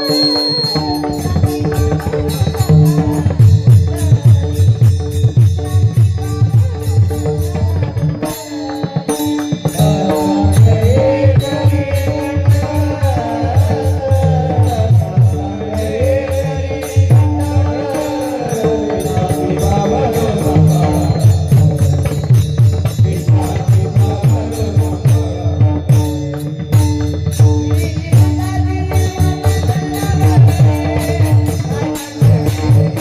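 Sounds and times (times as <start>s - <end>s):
wavering melody line: 0.0s - 11.8s
hand drum beating: 0.0s - 33.0s.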